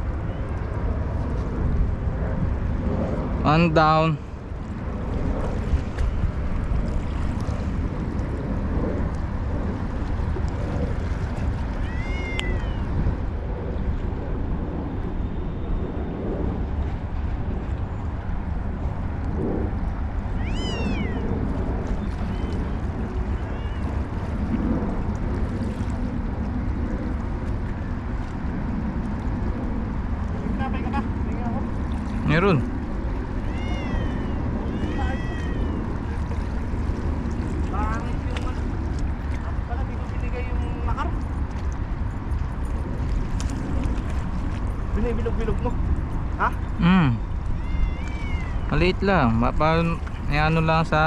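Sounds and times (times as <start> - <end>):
water: 0.0 - 51.0
wind: 0.0 - 51.0
high-pitched cries: 20.4 - 21.2, 33.4 - 35.8, 46.8 - 48.7.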